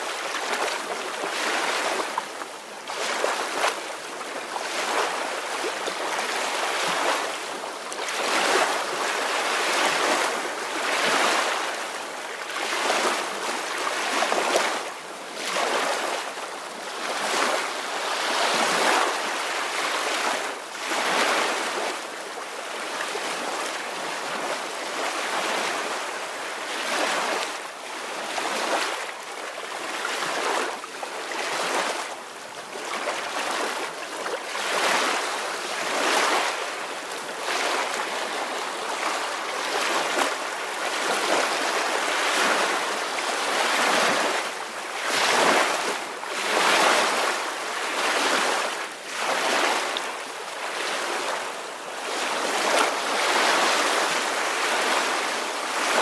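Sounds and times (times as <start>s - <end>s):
ocean waves washing ashore: 0.0s - 56.0s.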